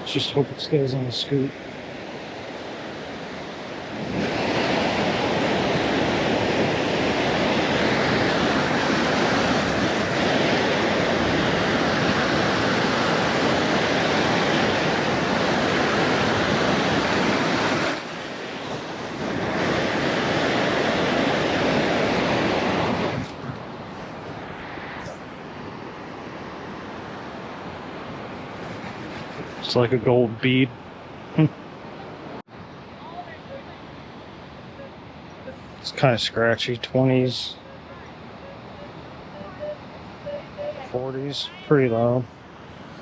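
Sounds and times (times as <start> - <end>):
ocean surf washing: 0.0 - 43.0
wind noise on microphone: 2.4 - 29.8.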